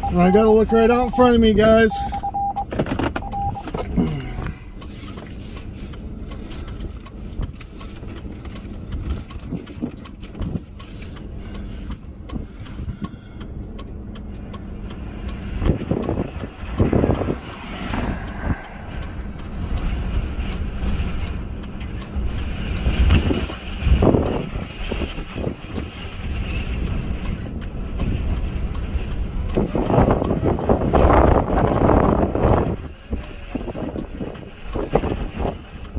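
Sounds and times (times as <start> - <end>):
engine and road rumble: 0.0 - 35.9
scattered clicks: 0.0 - 35.9.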